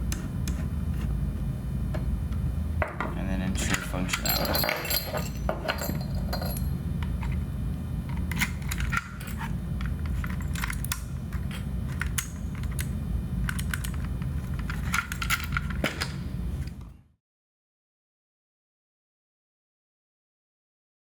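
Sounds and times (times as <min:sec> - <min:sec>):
keys jingling: 0:03.8 - 0:06.8, 0:10.1 - 0:12.8.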